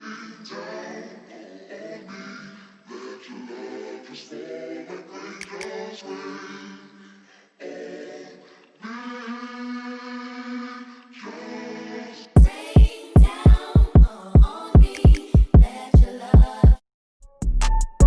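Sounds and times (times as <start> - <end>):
person singing unaccompanied: 4.3 - 6.8, 12.4 - 16.8.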